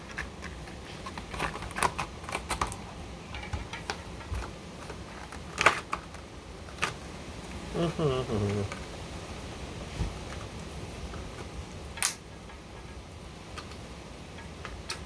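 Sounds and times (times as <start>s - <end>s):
cardboard packaging being handled: 0.0s - 7.1s.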